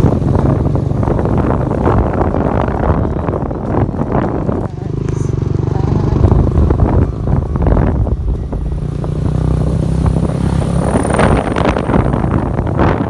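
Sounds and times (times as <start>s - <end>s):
engine running low hum: 0.0s - 13.0s.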